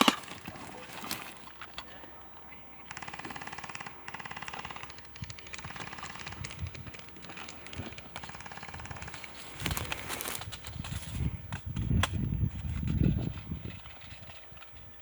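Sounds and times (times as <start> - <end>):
airsoft guns firing bursts: 0.0 - 10.3.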